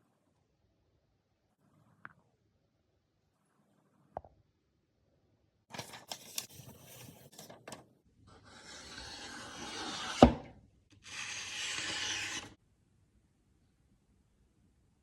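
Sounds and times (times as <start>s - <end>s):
rubbing and scraping on knife blade: 8.4s - 10.3s, 11.0s - 12.6s.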